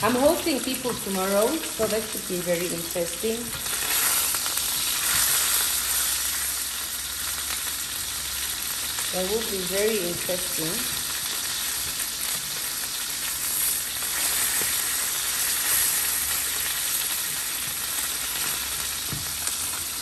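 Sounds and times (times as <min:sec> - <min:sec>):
chicken sizzling in hot oil: 0:00.0 - 0:20.0.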